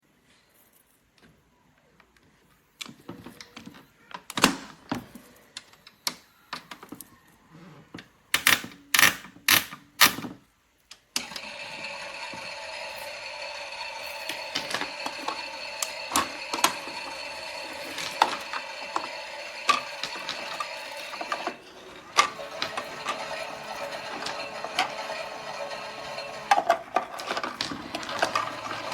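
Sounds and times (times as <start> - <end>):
plastic toy clicks and knocks: 8.3 - 10.3, 13.8 - 28.9
toy motor whirring: 11.2 - 28.9.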